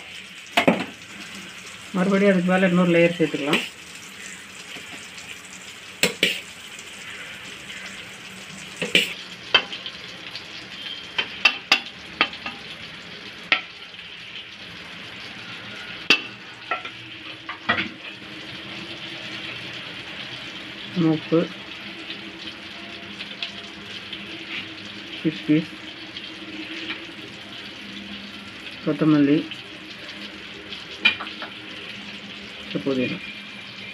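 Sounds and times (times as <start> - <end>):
oil sizzling in a pan: 0.0 - 33.9.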